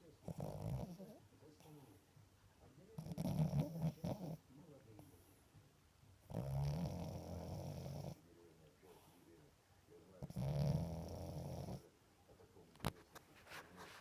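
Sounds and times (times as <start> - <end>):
pet snoring: 0.2 - 1.9, 2.9 - 4.4, 6.3 - 8.3, 10.2 - 11.9.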